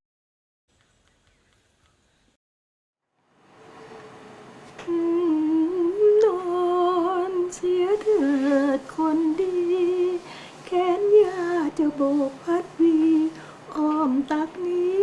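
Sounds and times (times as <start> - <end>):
woman singing a lullaby: 4.8 - 15.0.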